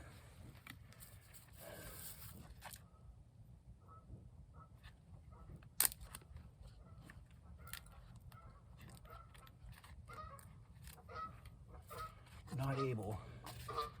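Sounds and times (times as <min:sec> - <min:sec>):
distant geese honking: 0:06.8 - 0:14.0.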